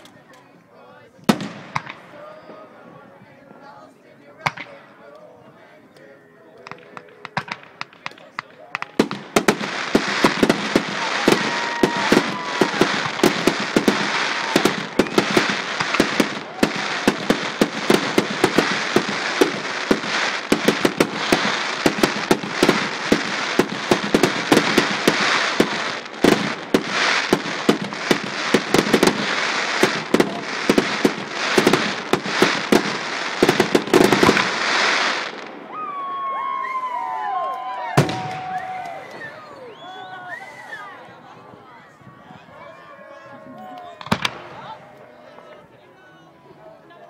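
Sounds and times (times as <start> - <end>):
fireworks crackling and banging: 1.2 - 2.6, 6.6 - 37.0, 37.9 - 39.5, 43.8 - 45.8.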